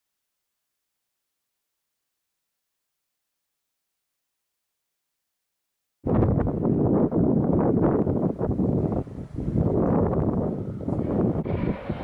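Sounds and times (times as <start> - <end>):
wind buffeting microphone: 6.0 - 12.0.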